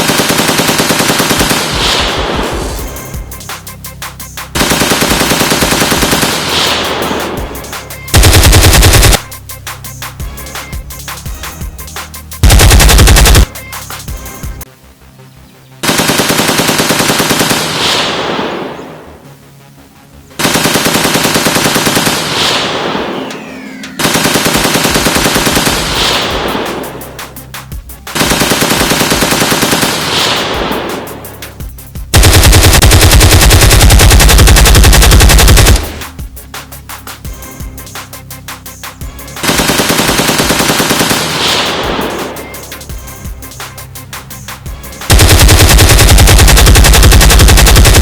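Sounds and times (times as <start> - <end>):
automatic gunfire bursts: 0.0 - 2.5, 4.6 - 7.5, 8.1 - 9.3, 12.4 - 13.5, 15.8 - 18.5, 20.4 - 23.3, 24.0 - 26.9, 28.1 - 31.0, 32.2 - 36.1, 39.4 - 42.4, 45.0 - 48.0.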